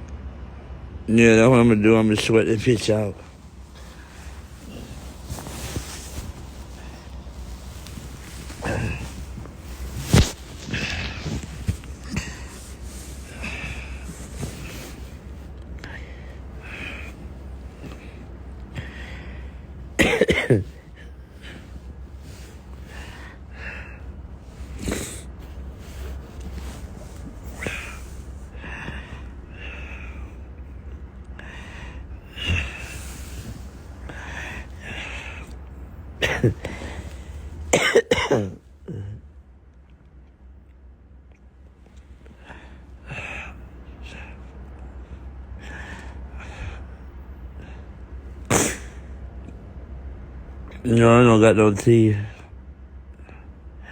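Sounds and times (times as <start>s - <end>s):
steady low hum: 0.0s - 53.9s
man breathing heavily: 3.3s - 19.9s, 20.7s - 37.7s, 42.3s - 48.1s
man sniffling: 3.8s - 30.4s, 31.4s - 35.6s, 36.2s - 39.2s.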